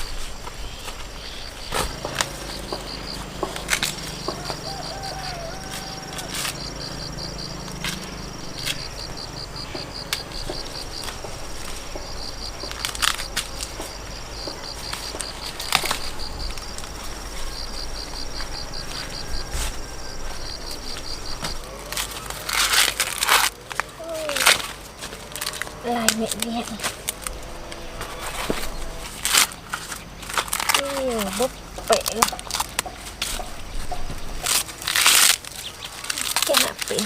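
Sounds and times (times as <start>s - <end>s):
sharp knocks or rustles: 0.0s - 7.0s, 18.4s - 37.0s
insects chirping: 0.0s - 37.0s.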